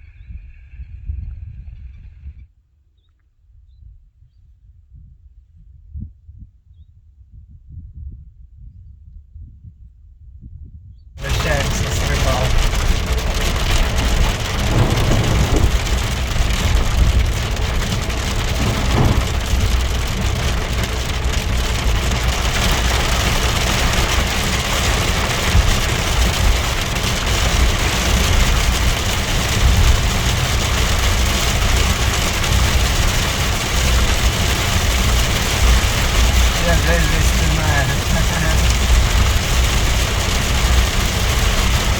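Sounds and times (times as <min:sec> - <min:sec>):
heavy rain pouring: 0:11.2 - 0:41.9
low rumble: 0:11.2 - 0:41.9.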